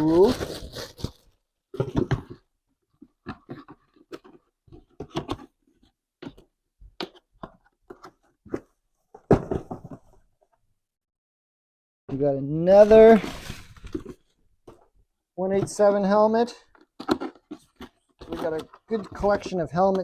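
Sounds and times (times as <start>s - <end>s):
packaging rustling and crinkling: 0.0s - 2.4s.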